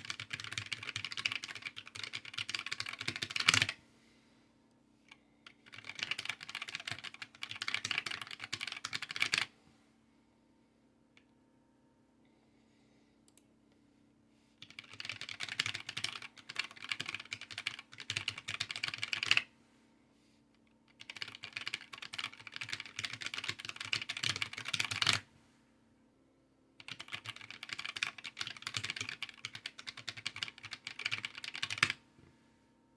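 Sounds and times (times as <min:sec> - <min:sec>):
fast typing on keyboard: 0:00.0 - 0:03.8, 0:05.5 - 0:09.5, 0:14.6 - 0:19.5, 0:20.9 - 0:25.2, 0:26.8 - 0:32.0.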